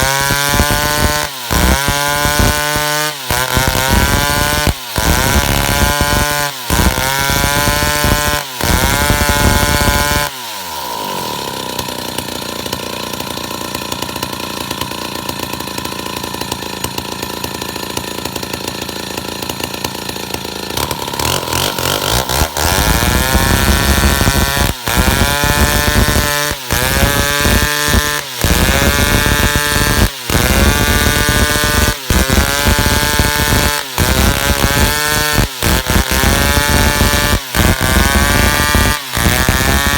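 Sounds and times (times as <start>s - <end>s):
chainsaw sawing wood: 0.0s - 39.9s.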